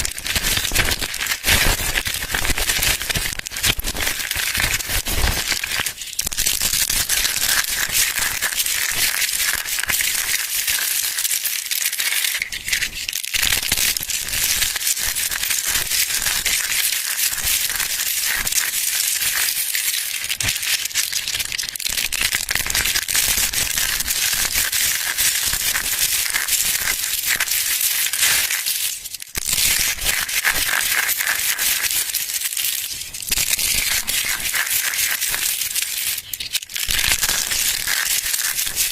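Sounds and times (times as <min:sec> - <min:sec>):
soap crunching: 0:24.0 - 0:38.9.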